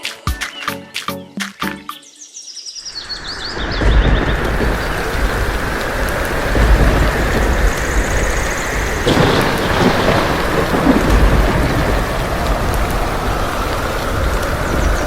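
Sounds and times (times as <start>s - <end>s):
heavy rain pouring: 3.0s - 15.0s
low thunder rumble: 3.2s - 15.0s.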